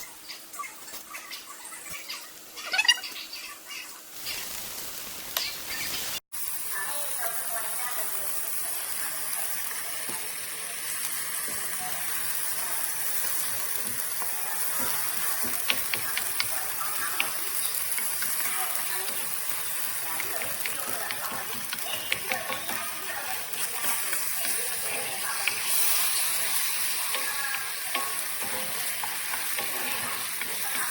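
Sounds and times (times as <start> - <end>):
food sizzling in a pan: 0.0 - 30.9
sharp pops of frying: 9.0 - 30.9.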